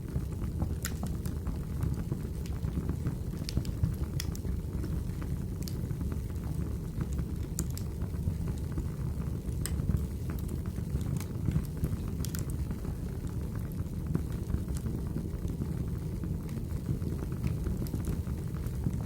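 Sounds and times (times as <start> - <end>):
logs crackling and snapping: 3.4 - 4.4.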